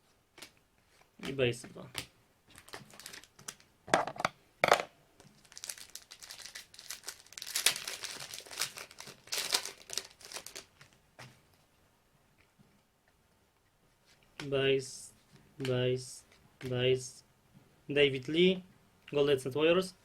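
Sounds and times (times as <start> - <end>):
wrapper crackling and crinkling: 2.5 - 3.7, 5.2 - 11.0.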